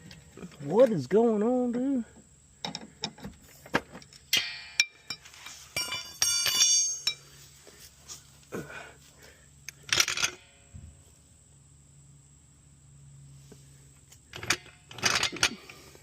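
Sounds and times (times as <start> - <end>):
floor jack handle clanking: 4.4 - 7.2, 14.4 - 15.8.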